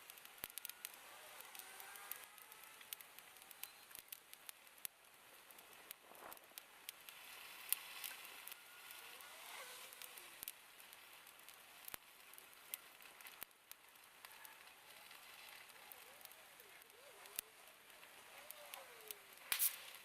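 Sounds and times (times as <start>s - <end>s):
bonfire crackling and popping: 0.0s - 20.0s
faint steady hiss: 0.0s - 20.0s.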